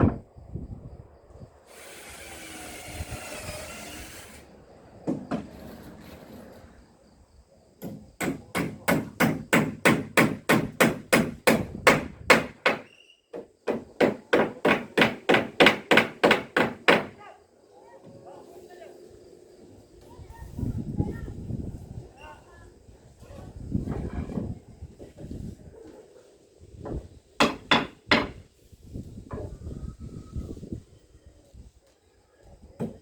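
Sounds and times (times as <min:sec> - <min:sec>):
hammer striking wood: 0:07.8 - 0:17.2, 0:27.4 - 0:28.4.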